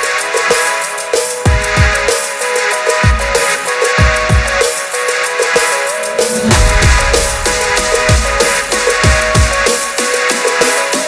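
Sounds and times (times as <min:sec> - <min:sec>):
drum and bass music: 0:05.6 - 0:10.3.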